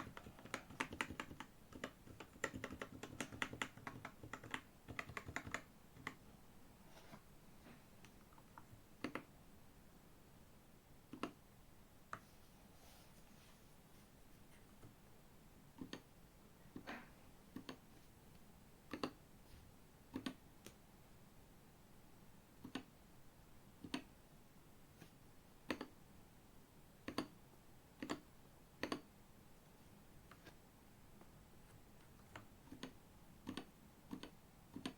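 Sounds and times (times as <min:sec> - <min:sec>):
mechanical keyboard keystrokes: 0:00.0 - 0:06.2.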